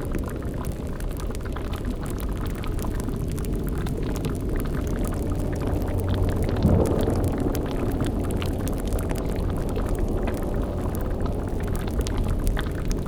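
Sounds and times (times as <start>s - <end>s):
crackling bubbling layer: 0.0s - 13.0s
low rumbling drone: 3.3s - 13.0s.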